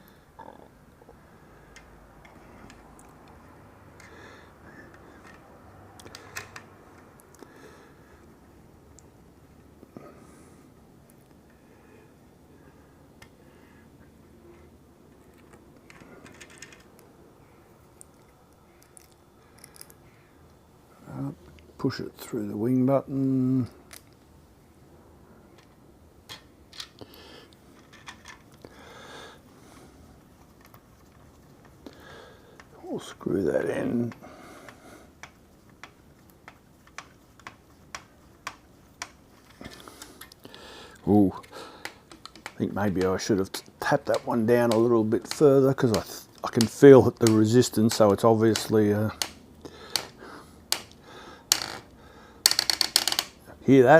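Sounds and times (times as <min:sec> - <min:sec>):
plastic parts clicking: 0:06.0 - 0:07.4, 0:15.1 - 0:17.0, 0:25.6 - 0:27.1, 0:27.8 - 0:28.7, 0:41.4 - 0:53.4
screwdriver clicking: 0:41.8 - 0:42.6.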